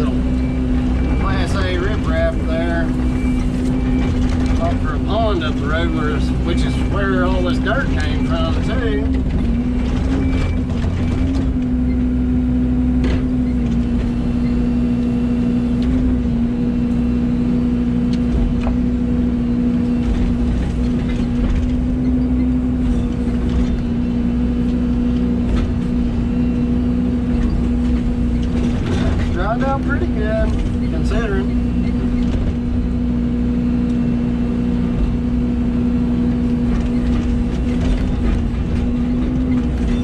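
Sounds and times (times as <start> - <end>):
excavator diesel engine running: 0.0 - 40.0.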